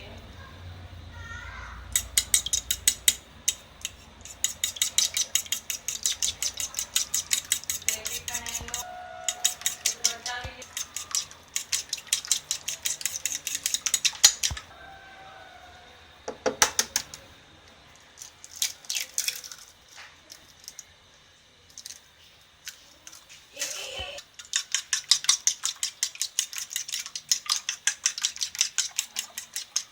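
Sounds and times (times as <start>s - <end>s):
fork clinking against bowl: 1.9s - 14.6s.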